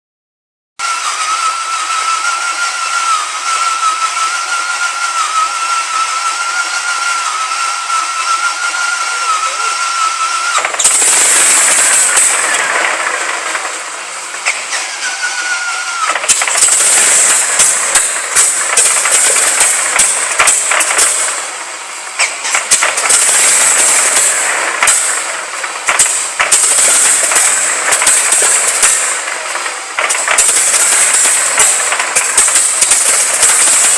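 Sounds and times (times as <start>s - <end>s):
aero engine running rough: 0.8s - 33.9s
engine popping: 1.0s - 33.9s.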